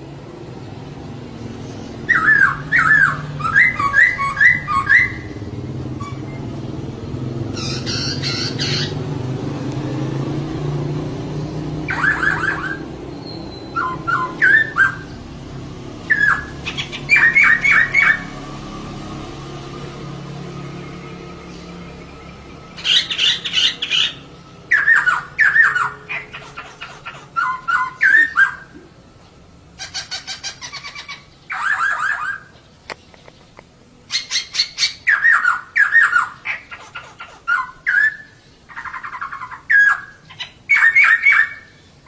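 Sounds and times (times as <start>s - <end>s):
bird calling sharp notes: 1.8s - 6.6s, 7.4s - 9.1s, 11.8s - 15.3s, 16.0s - 18.4s, 20.7s - 28.9s, 29.7s - 33.1s, 34.1s - 41.9s.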